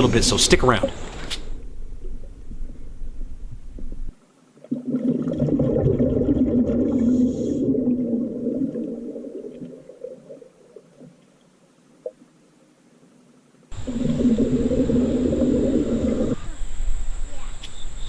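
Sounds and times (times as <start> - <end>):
underwater bubbles burbling: 1.9 - 11.2, 13.7 - 16.7.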